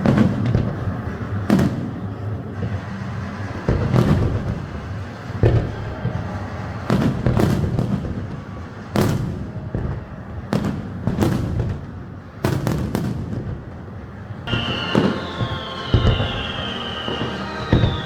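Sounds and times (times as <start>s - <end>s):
fireworks bangs with echo: 0.0s - 18.0s
high tone sliding downward: 14.5s - 18.0s.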